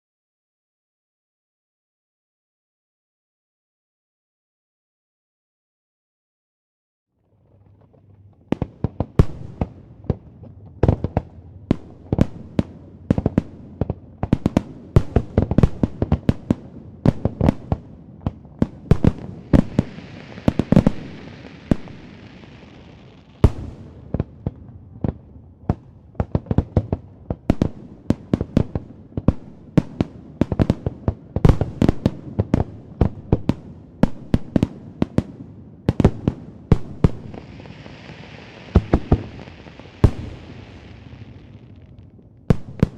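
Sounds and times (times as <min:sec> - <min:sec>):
fireworks bangs and booms: 0:07.7 - 0:42.9
fireworks high hiss: 0:19.1 - 0:23.5, 0:37.1 - 0:41.7.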